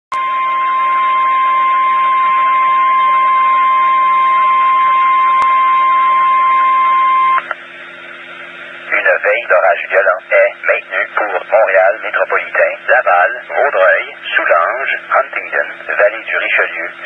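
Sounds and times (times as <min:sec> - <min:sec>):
high alarm tone: 0:00.1 - 0:07.5
radio hiss and hum: 0:08.8 - 0:17.0.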